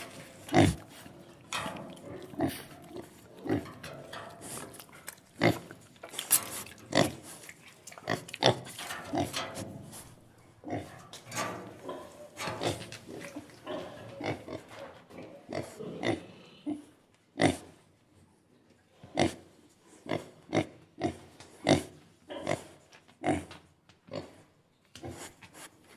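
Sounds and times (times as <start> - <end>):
pig grunting: 0.3 - 5.8, 11.8 - 17.7.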